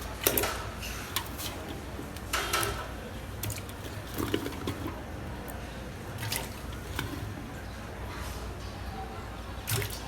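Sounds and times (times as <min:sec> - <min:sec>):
cooking utensils clattering: 0:00.0 - 0:05.0.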